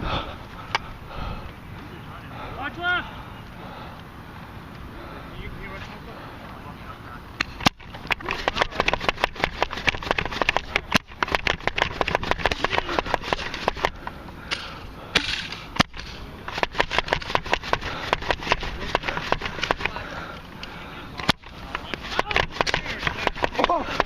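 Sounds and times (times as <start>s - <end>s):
toy blasters clicking and firing: 7.4s - 14.0s, 15.2s - 20.0s, 21.2s - 24.0s.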